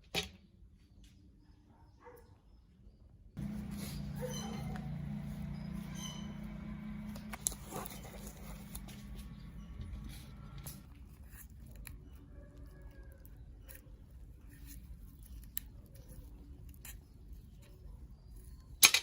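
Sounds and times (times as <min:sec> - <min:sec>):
low hum: 0:03.4 - 0:10.9
small tools clicking and scraping: 0:03.4 - 0:19.0.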